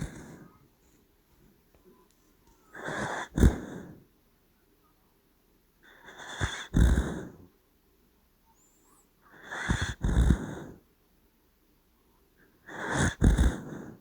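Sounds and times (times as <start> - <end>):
dog snoring: 0.0 - 0.6, 2.7 - 4.0, 5.8 - 7.5, 9.3 - 10.8, 12.6 - 14.0
dog snorting: 0.0 - 0.6, 2.7 - 4.0, 5.9 - 7.5, 9.3 - 10.8, 12.7 - 14.0.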